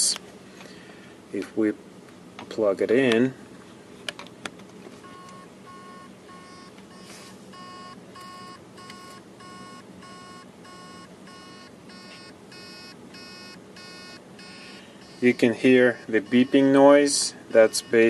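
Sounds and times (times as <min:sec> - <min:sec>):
hard drive beeping: 0:05.0 - 0:18.0.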